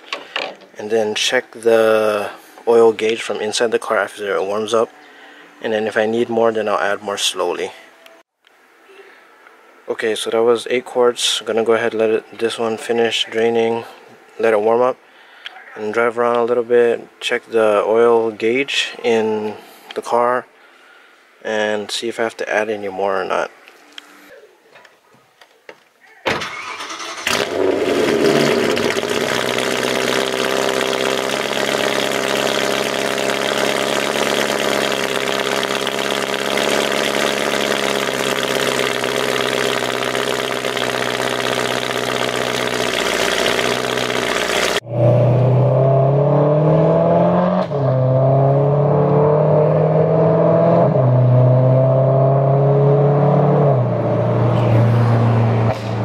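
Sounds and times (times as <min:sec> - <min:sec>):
car engine starting and idling: 0:26.4 - 0:52.7
car engine shifting through gears: 0:26.4 - 0:56.0.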